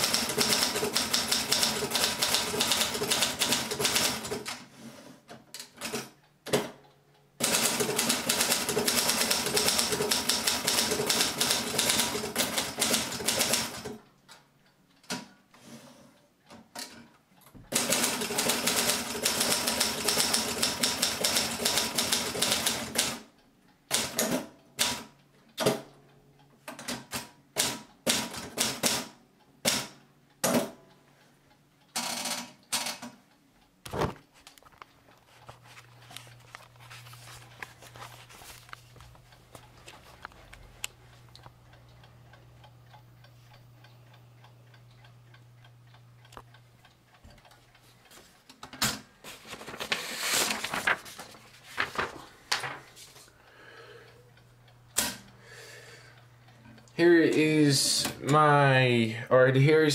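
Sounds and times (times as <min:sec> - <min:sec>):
typewriter keystrokes: 0:00.0 - 0:04.6, 0:07.4 - 0:14.0, 0:17.7 - 0:23.3, 0:23.9 - 0:25.9, 0:26.7 - 0:30.7, 0:48.7 - 0:52.8, 0:55.0 - 0:55.3.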